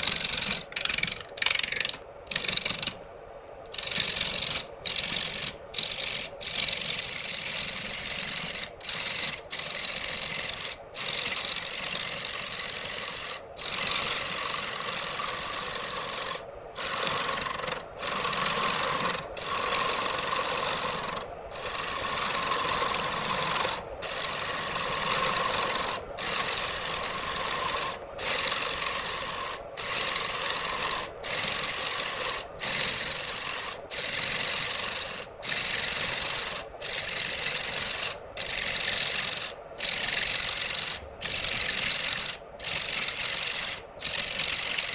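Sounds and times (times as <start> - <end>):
lathe tool scraping wood: 0.0 - 2.9, 3.7 - 44.9
faint steady hum: 0.0 - 44.9.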